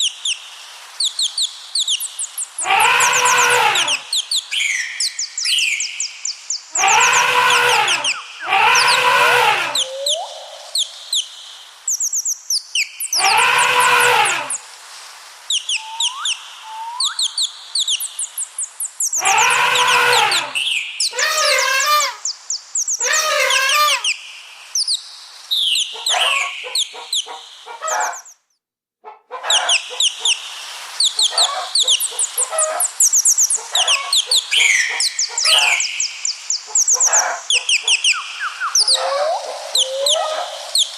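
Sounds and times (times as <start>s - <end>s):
small birds chirping: 0.0s - 14.7s, 15.4s - 28.6s, 29.4s - 40.9s
chicken clucking: 31.3s - 32.9s, 38.7s - 40.8s.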